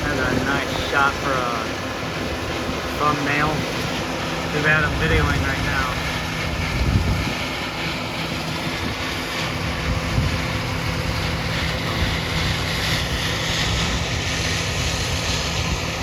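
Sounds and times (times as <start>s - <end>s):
steady rushing noise: 0.0s - 16.0s
vehicle engine running: 0.0s - 16.0s.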